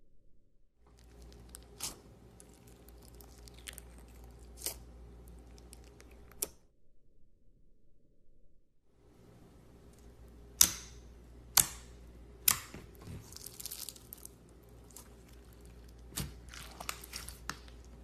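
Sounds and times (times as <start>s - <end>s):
slime crackling and crinkling: 0.9s - 6.5s, 12.5s - 18.0s.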